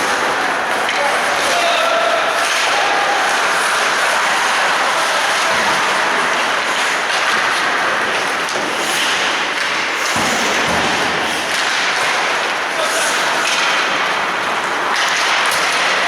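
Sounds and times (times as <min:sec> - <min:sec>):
ice rink arena noise: 0:00.0 - 0:16.0.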